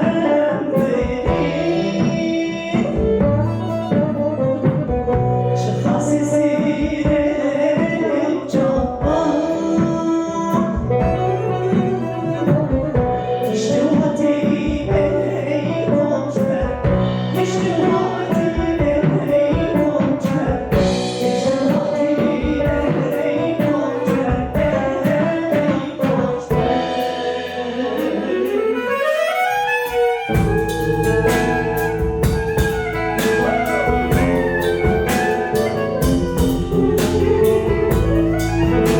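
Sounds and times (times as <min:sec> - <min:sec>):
clarinet: 0:00.0 - 0:06.1, 0:09.1 - 0:13.9, 0:28.1 - 0:38.9
drums: 0:00.0 - 0:38.9
guitar: 0:00.0 - 0:38.9
woman singing: 0:00.0 - 0:38.9.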